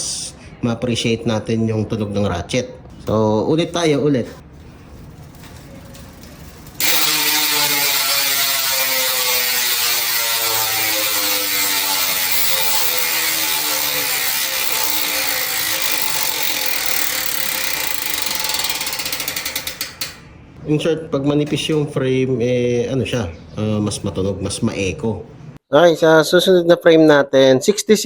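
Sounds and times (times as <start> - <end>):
bicycle hub ratchet clicking: 6.8 - 20.2.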